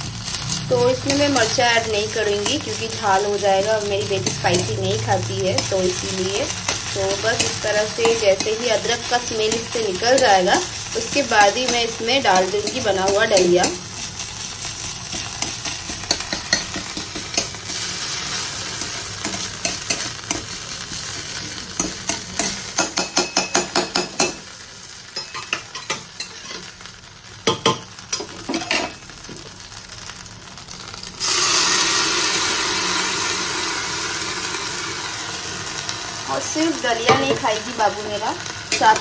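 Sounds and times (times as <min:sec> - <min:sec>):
butter and spices sizzling in a pan: 0:00.0 - 0:39.0
spoon stirring and scraping pan: 0:05.6 - 0:26.8, 0:27.4 - 0:29.6.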